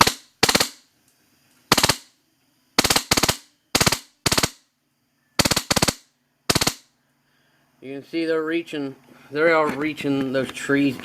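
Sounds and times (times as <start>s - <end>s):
airsoft gun automatic bursts: 0.0s - 0.8s, 1.7s - 2.1s, 2.8s - 4.6s, 5.4s - 6.8s.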